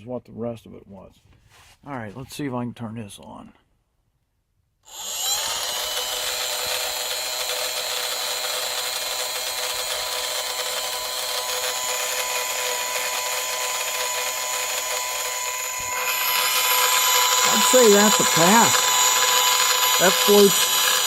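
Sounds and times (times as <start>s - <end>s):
small toy motor and fan whining: 4.9s - 21.0s.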